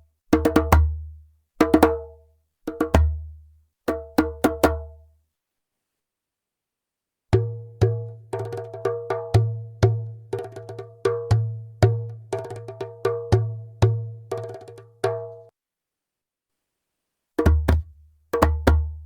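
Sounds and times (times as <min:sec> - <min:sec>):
djembe played by hand: 0:00.3 - 0:01.0, 0:01.6 - 0:02.1, 0:02.7 - 0:03.3, 0:03.9 - 0:04.9, 0:07.4 - 0:15.4, 0:17.4 - 0:19.0.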